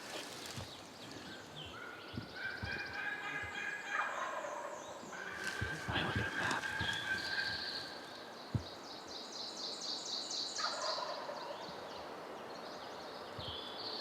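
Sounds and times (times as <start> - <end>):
songbird trills: 0.0 - 14.0
turkey gobbling: 2.5 - 8.0.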